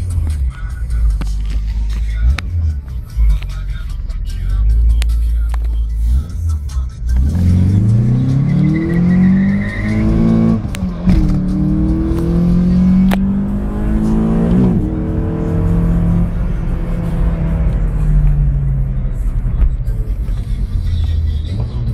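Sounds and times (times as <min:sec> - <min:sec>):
car engine accelerating hard: 0:06.0 - 0:21.9.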